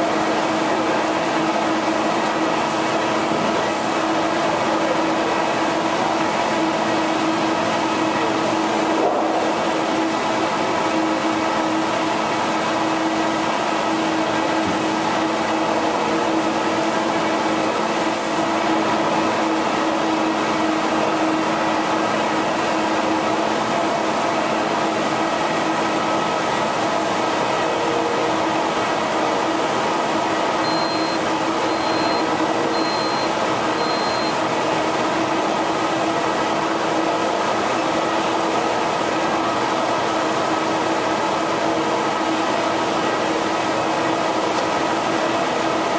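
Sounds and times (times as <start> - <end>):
printer machine hum: 0.0 - 45.9
short high beeps: 30.6 - 34.4.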